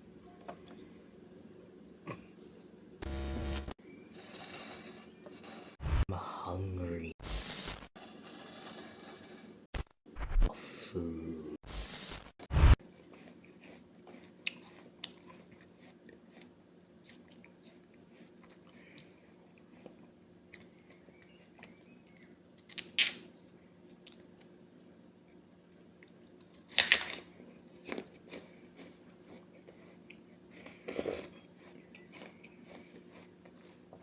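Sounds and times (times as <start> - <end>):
chewing crunchy snack: 12.8 - 24.6, 25.8 - 34.0.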